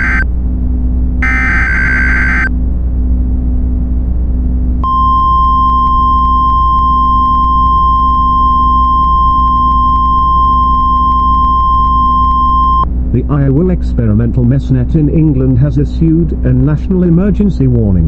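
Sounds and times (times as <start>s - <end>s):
steady alert tone: 0.0s - 0.2s, 1.2s - 2.5s
low droning rumble: 0.0s - 18.0s.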